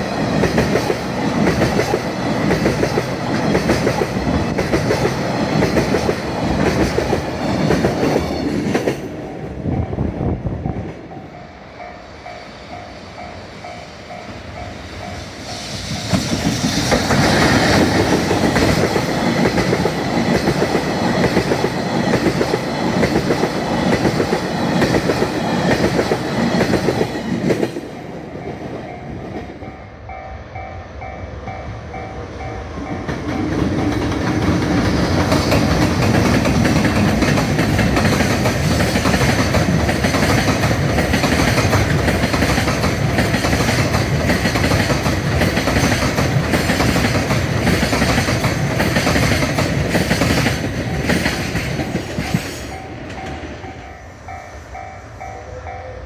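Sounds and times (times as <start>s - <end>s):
train wheels clattering on rails: 0.0s - 29.8s, 32.2s - 54.9s
crossing warning bell: 9.1s - 15.4s, 52.3s - 56.0s.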